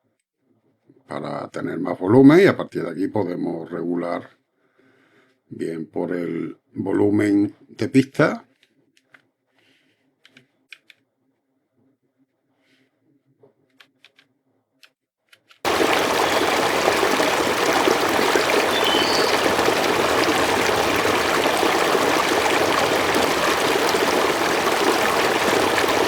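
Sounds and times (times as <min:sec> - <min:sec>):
flowing river water: 0:15.7 - 0:26.0.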